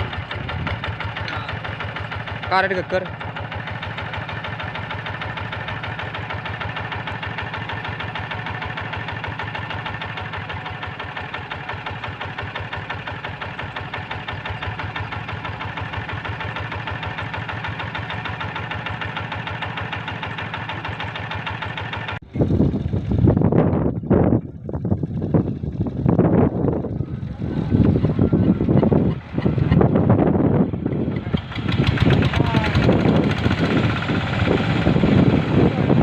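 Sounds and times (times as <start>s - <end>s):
diesel engine running: 0.0s - 36.0s.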